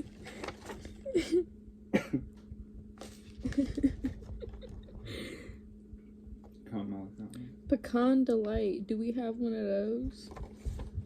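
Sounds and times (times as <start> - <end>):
steady low hum: 0.0 - 11.0
person chuckling: 0.9 - 2.4, 3.3 - 5.6.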